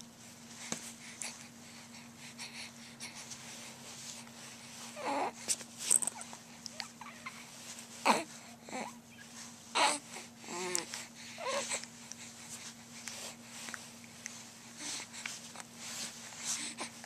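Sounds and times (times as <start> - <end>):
baby fussing and whimpering: 4.8 - 5.5, 6.1 - 12.4.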